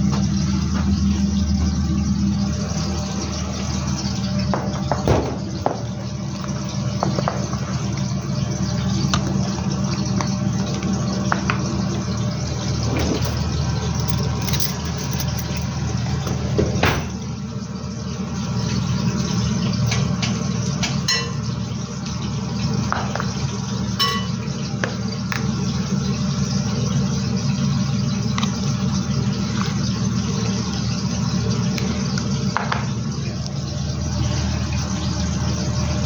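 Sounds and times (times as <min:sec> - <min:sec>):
low mechanical hum: 0:00.0 - 0:36.0
ringing clink: 0:14.0 - 0:15.7, 0:21.1 - 0:21.5, 0:24.0 - 0:24.4.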